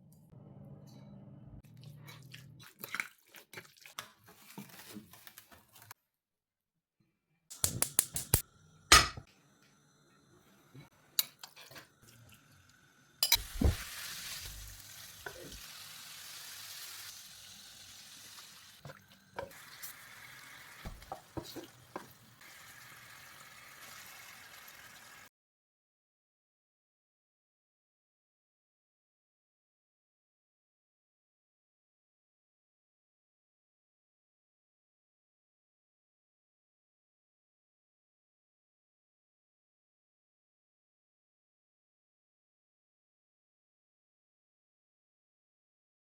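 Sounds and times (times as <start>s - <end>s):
food sizzling in hot oil: 12.2s - 25.3s
utensils clinking against pan and dishes: 13.2s - 13.8s.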